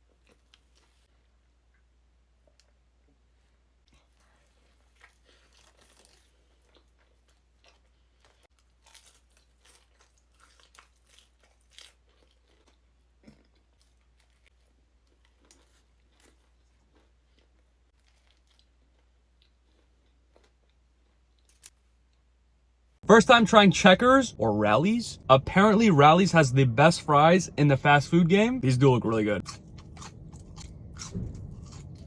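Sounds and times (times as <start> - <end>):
person chewing crunchy food: 0.0 - 1.1, 3.9 - 22.2, 29.4 - 32.0
faint low hum: 0.0 - 32.0.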